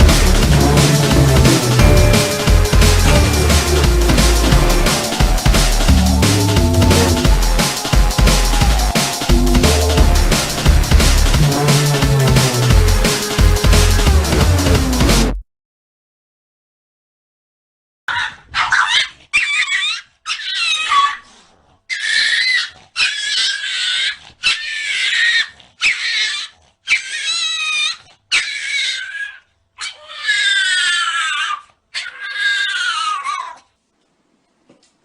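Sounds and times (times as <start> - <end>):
cat meowing and yowling: 21.9 - 33.7.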